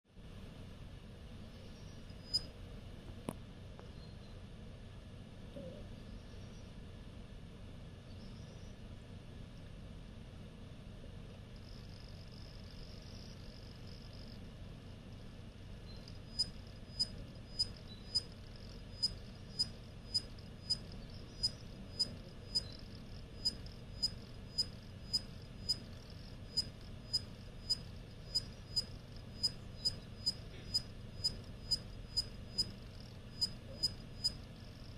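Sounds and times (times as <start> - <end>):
hard drive low hum: 0.1 - 34.9
hard drive metallic chirps: 1.5 - 2.6, 11.6 - 14.5, 15.8 - 34.9.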